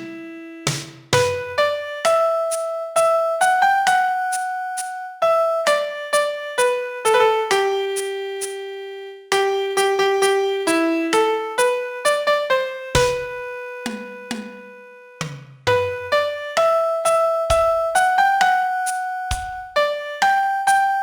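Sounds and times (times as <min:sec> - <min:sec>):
piano melody: 0:00.0 - 0:21.0.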